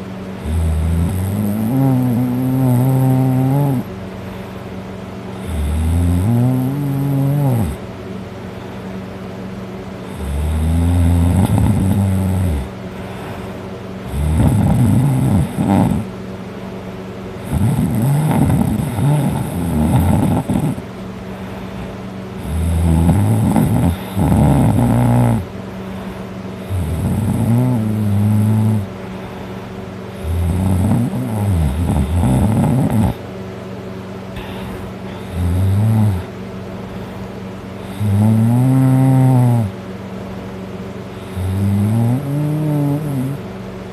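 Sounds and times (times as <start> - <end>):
steady low hum: 0.0 - 43.9
man snoring heavily: 0.4 - 3.9, 5.4 - 7.8, 10.0 - 16.1, 17.4 - 20.9, 22.4 - 28.9, 30.1 - 33.2, 34.4 - 36.3, 37.8 - 39.8, 41.2 - 43.4.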